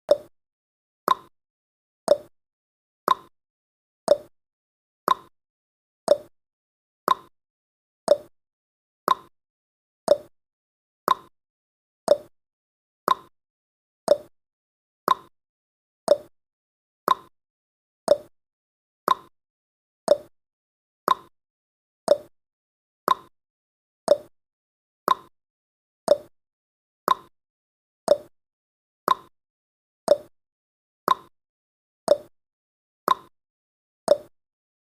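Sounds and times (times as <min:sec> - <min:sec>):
timer ticking: 0:00.1 - 0:00.3, 0:01.1 - 0:01.3, 0:02.1 - 0:02.3, 0:03.1 - 0:03.3, 0:04.1 - 0:04.3, 0:05.1 - 0:05.3, 0:06.1 - 0:06.3, 0:07.1 - 0:07.3, 0:08.1 - 0:08.3, 0:09.1 - 0:09.3, 0:10.1 - 0:10.3, 0:11.1 - 0:11.3, 0:12.1 - 0:12.3, 0:13.1 - 0:13.3, 0:14.1 - 0:14.3, 0:15.1 - 0:15.3, 0:16.1 - 0:16.3, 0:17.1 - 0:17.3, 0:18.1 - 0:18.3, 0:19.1 - 0:19.3, 0:20.1 - 0:20.3, 0:21.1 - 0:21.3, 0:22.1 - 0:22.3, 0:23.1 - 0:23.3, 0:24.1 - 0:24.3, 0:25.1 - 0:25.3, 0:26.1 - 0:26.3, 0:27.1 - 0:27.3, 0:28.1 - 0:28.3, 0:29.1 - 0:29.3, 0:30.1 - 0:30.3, 0:31.1 - 0:31.3, 0:32.1 - 0:32.3, 0:33.1 - 0:33.3, 0:34.1 - 0:34.3.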